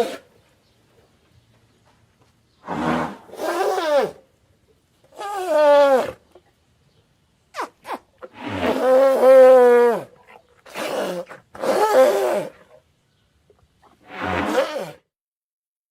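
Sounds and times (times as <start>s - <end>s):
pitched roar-like creature calls: 2.7s - 4.2s, 8.3s - 12.6s, 14.0s - 15.0s.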